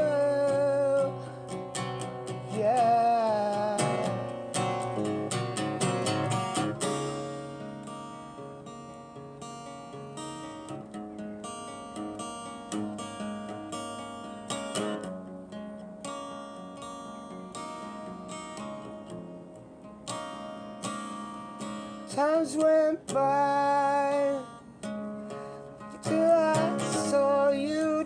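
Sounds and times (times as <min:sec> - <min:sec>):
acoustic guitar strummed chords: 0:00.0 - 0:28.0.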